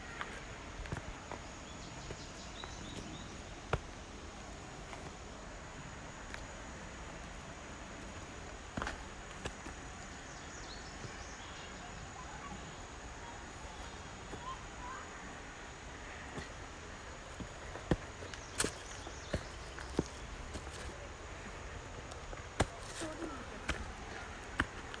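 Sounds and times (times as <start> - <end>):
footsteps on hiking trail: 0.0 - 11.5, 13.0 - 25.0
outdoor background noise: 0.0 - 25.0
knocks and scuffs: 0.1 - 5.2, 8.0 - 11.2, 16.2 - 25.0.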